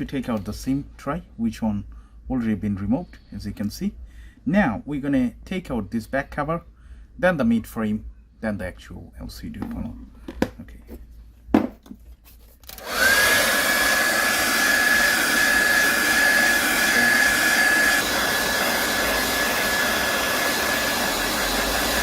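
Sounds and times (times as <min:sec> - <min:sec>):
hair dryer blowing with motor whine: 0:12.7 - 0:22.0.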